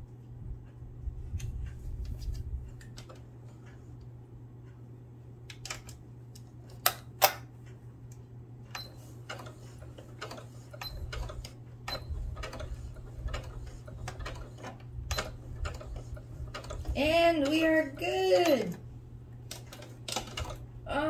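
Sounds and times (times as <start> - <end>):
sewing machine ticking: 8.7 - 18.8, 19.5 - 20.6.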